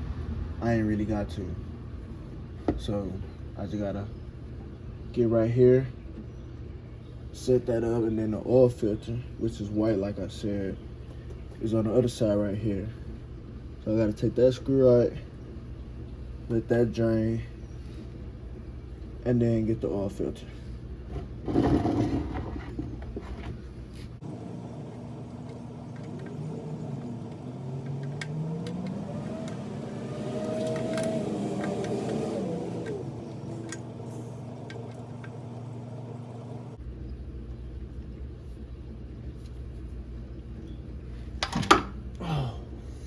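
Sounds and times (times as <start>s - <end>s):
vehicle engine humming: 23.8s - 36.8s.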